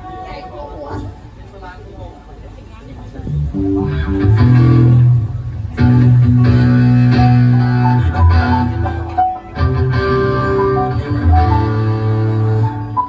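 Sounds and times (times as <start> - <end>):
band playing with guitar and bass: 3.3 - 13.0.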